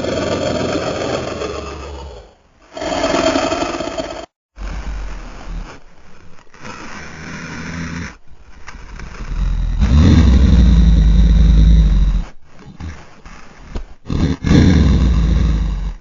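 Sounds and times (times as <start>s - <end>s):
deep dinosaur roar: 0.0s - 4.3s, 9.2s - 12.3s, 14.1s - 16.0s
low growl: 0.0s - 5.8s, 6.6s - 13.1s, 13.7s - 16.0s.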